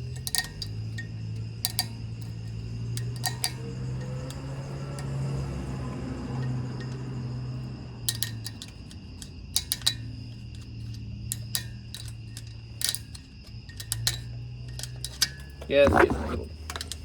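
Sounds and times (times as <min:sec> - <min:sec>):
hand tools clinking on metal: 0:05.8 - 0:17.0.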